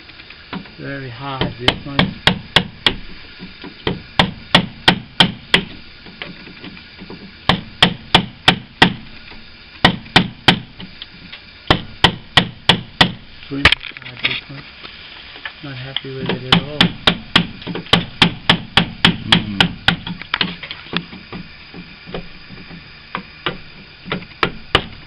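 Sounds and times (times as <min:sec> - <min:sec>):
hammer tapping a chisel: 0:16.2 - 0:20.5.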